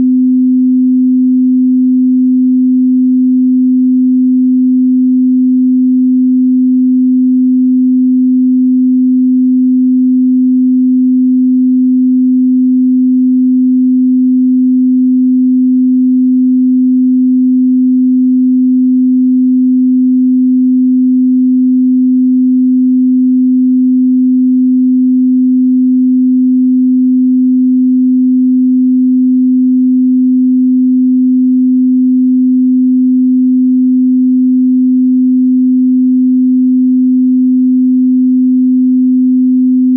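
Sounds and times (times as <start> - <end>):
low pure sine tone: 0.0 - 39.9.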